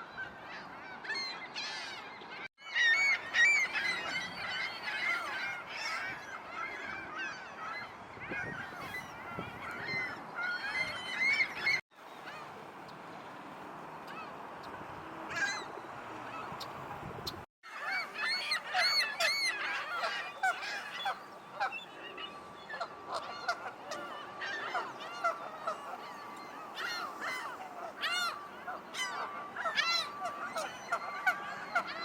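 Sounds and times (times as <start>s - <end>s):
flock of birds calling: 0.2s - 12.6s, 15.3s - 32.0s.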